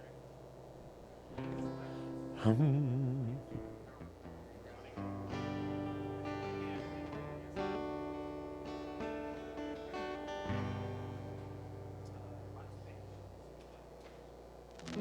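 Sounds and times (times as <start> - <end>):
guitar chords: 1.3 - 13.4, 14.8 - 15.0.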